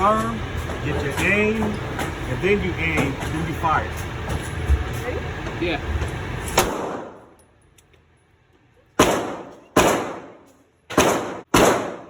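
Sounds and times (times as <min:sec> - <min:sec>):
handgun shots with echo: 0:06.6 - 0:07.2, 0:09.0 - 0:12.0.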